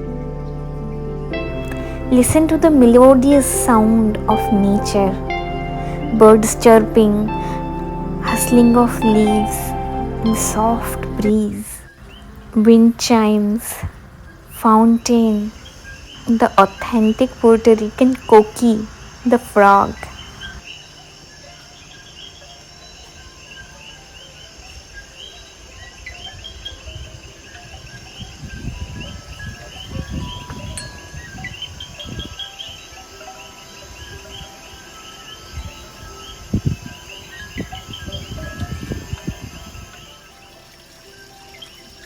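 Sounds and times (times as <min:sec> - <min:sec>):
faint wind chime tones: 0:00.0 - 0:42.0
frogs chirping: 0:00.0 - 0:42.0
insects chirping: 0:00.0 - 0:42.0
wind rumble on microphone: 0:25.7 - 0:32.5, 0:35.5 - 0:40.1.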